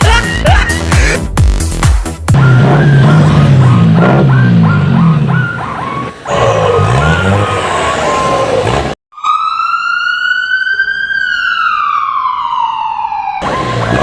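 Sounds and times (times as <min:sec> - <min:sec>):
busy mixed sound: 0:00.0 - 0:07.6
siren wail: 0:02.3 - 0:14.0.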